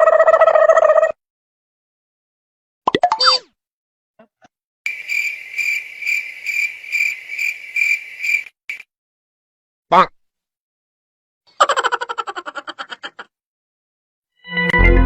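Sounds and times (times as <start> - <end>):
crickets chirping: 4.9 - 8.8.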